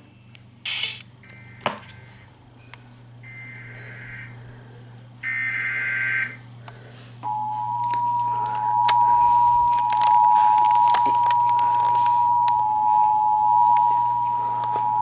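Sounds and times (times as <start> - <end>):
two-tone attention signal: 7.3 - 15.0.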